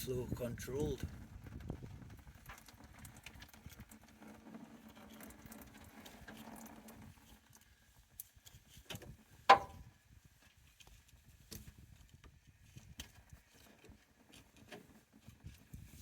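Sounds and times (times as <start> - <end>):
small drips and ticks: 0.8 - 16.0
oil trickling into drum: 1.3 - 9.9
sharp knock: 9.5 - 9.8.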